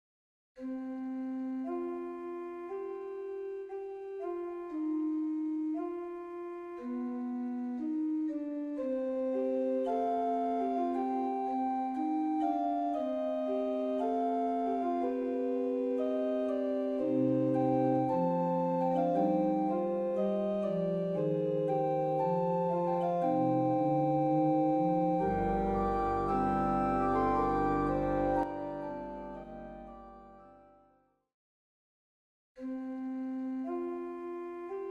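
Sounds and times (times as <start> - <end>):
slow organ-like keyboard music: 0.6 - 30.9, 32.6 - 34.9.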